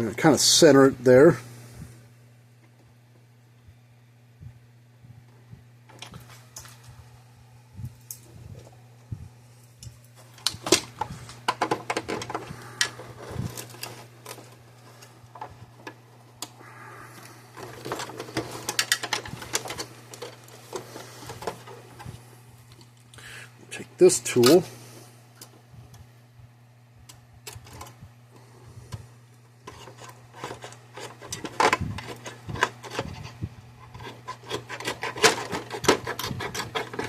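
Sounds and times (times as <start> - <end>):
steady low hum: 0.0 - 37.0
small metal parts rattling: 17.6 - 21.8, 29.7 - 37.0.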